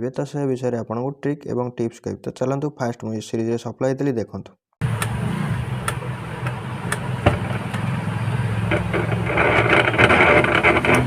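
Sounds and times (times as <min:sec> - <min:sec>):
mixer grinder motor humming: 0:04.8 - 0:11.0
harsh rattling noise: 0:08.5 - 0:11.0.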